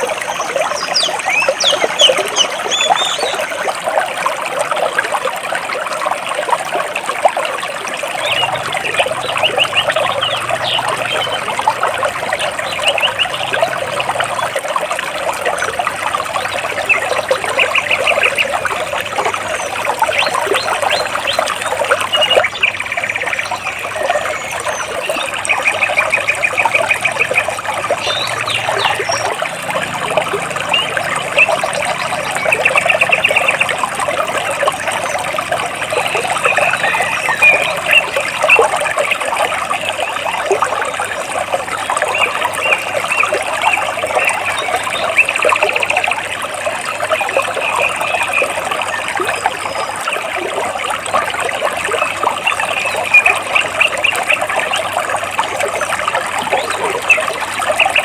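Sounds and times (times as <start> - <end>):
small birds chirping: 0.0 - 3.6, 8.2 - 13.7, 19.4 - 29.4, 35.9 - 39.2
water rushing over rocks: 0.0 - 58.0
bird trills: 0.3 - 3.4.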